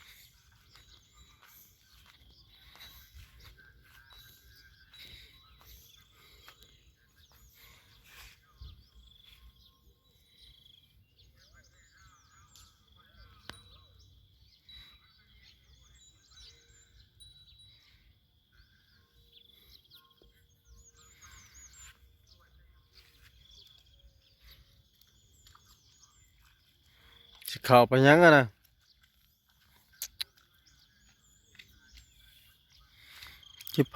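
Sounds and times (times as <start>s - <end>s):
birds chirping and calling: 0.0s - 33.9s.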